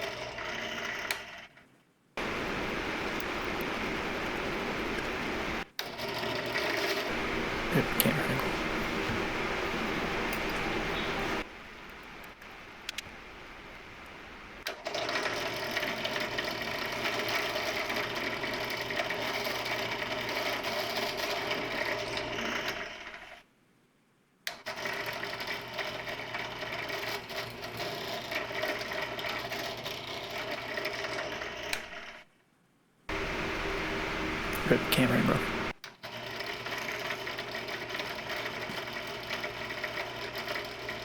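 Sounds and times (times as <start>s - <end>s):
drill press motor whine: 2.2s - 5.6s, 7.1s - 11.5s, 33.1s - 35.7s.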